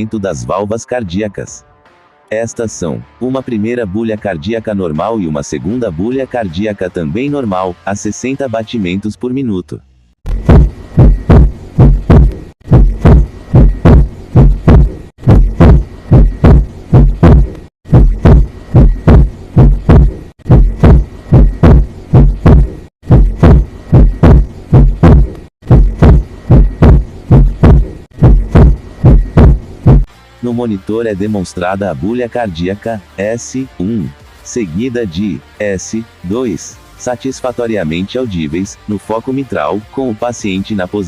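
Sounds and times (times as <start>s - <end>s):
heartbeat through stethoscope: 10.3s - 30.1s.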